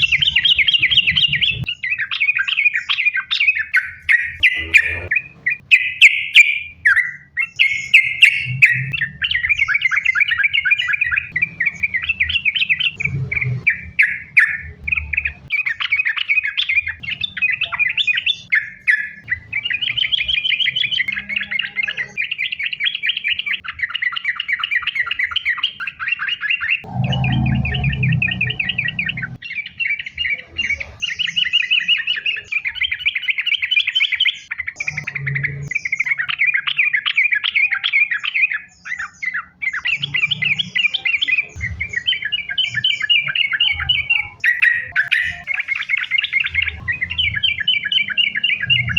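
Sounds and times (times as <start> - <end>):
bulbul singing: 0.0 - 48.9
low rumble: 26.9 - 29.4.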